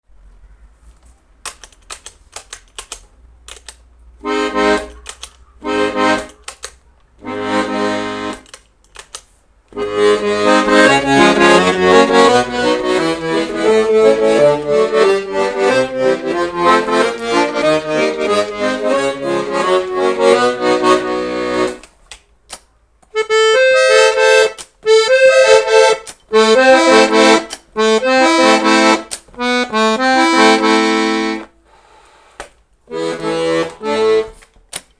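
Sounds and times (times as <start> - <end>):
accordion playing: 4.2 - 8.6, 9.7 - 21.9, 23.2 - 31.6, 32.9 - 34.5.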